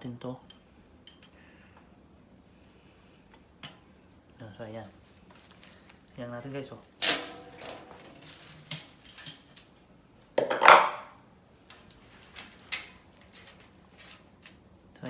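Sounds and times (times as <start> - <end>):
metal bicycle tools clinking: 6.4 - 9.6, 10.4 - 11.1
rattling metallic burst: 7.0 - 8.9.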